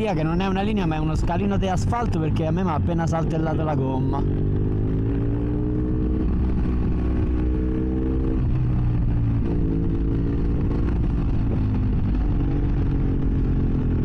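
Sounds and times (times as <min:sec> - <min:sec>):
motorcycle engine revving: 0:02.4 - 0:14.0.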